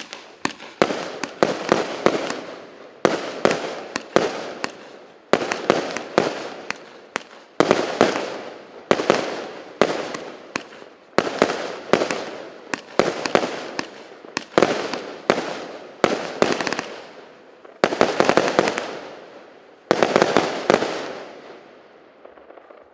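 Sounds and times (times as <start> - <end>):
crackling pops: 0.0 - 2.5, 3.4 - 8.2, 10.0 - 15.1
fireworks cake bangs: 0.0 - 17.1.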